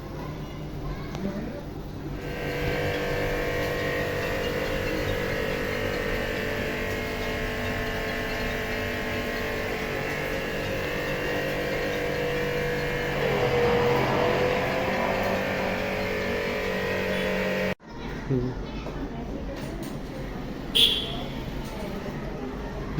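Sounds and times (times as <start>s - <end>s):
pressure washer pump running: 2.2s - 17.8s.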